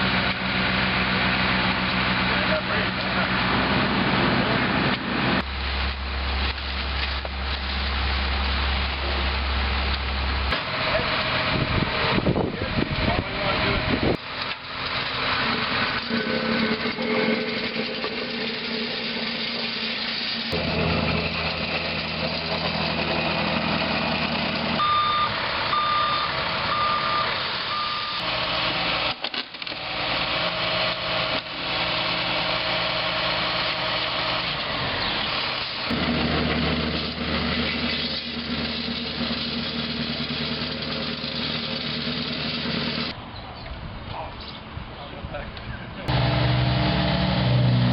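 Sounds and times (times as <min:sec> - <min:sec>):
heavy machinery engine running: 0:00.0 - 0:43.2, 0:46.1 - 0:47.9
reversing alarm beeping: 0:24.8 - 0:28.3.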